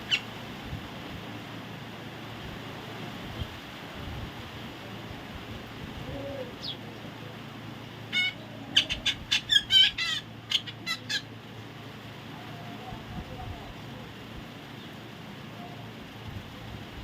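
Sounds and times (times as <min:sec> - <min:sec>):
parrot calling: 0:00.0 - 0:00.5, 0:06.0 - 0:07.0, 0:08.0 - 0:11.4
steady background hiss: 0:00.0 - 0:17.0.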